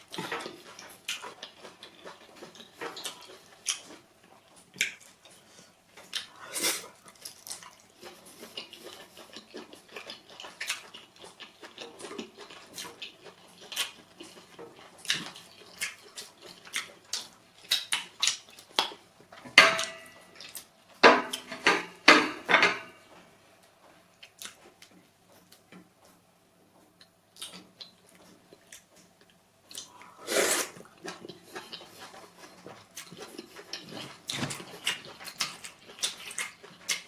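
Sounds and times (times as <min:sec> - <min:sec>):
dishes and utensils clinking: 0:19.5 - 0:20.3, 0:21.0 - 0:23.0.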